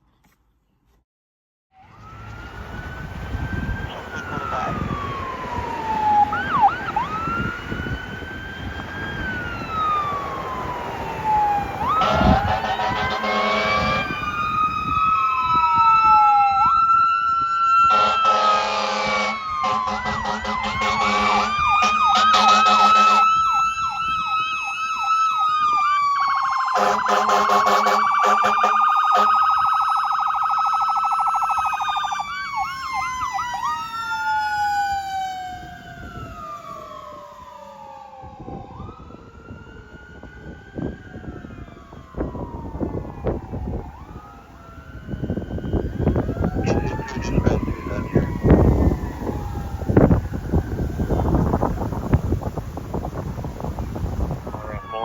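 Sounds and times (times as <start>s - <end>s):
fire engine siren wailing: 1.8s - 55.0s
air horn blasts: 11.9s - 14.2s, 17.9s - 23.2s, 26.8s - 29.4s.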